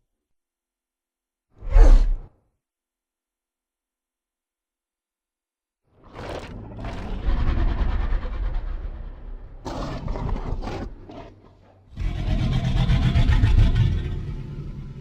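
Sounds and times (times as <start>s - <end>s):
deep creature growl: 6.1s - 14.4s.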